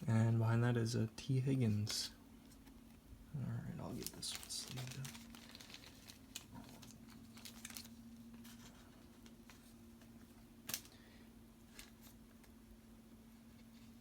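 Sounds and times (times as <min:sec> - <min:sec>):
card sleeve clicks and rustles: 0:04.0 - 0:10.9.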